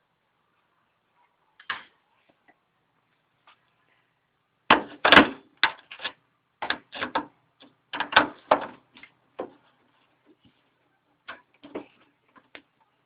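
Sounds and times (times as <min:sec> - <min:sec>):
plastic parts clicking and knocking: 0:04.7 - 0:09.6.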